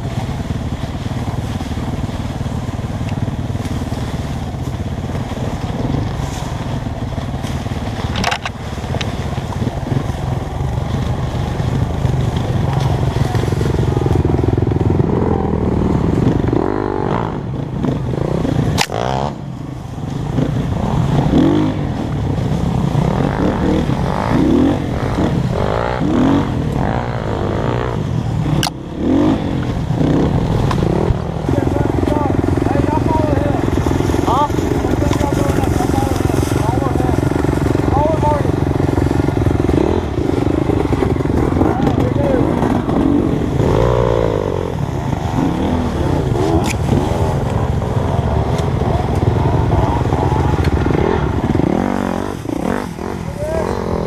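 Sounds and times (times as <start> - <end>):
dirt bike engine revving: 0.0 - 54.0.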